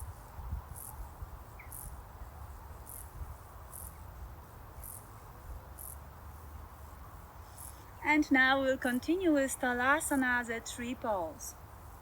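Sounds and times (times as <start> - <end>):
insect high-pitched chirps: 0.7 - 2.0, 2.8 - 4.1.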